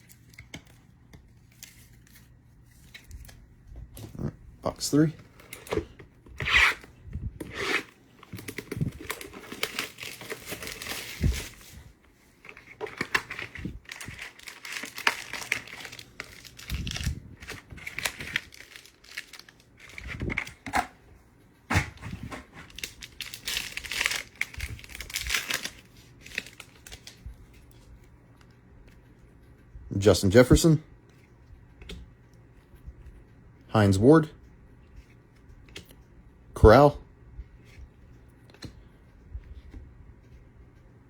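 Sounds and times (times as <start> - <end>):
plastic wrappers crinkling: 7.6 - 20.9, 21.9 - 27.8.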